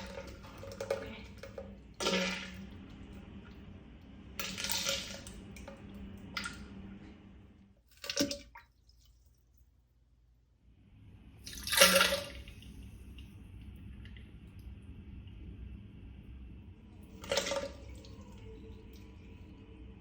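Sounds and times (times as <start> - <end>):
diarrhea spattering into toilet water: 0.0 - 2.8, 4.4 - 6.6, 7.9 - 8.7.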